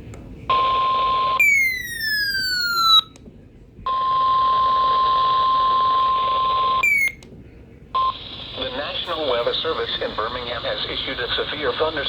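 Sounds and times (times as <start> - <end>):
radio static hiss: 8.1 - 12.0.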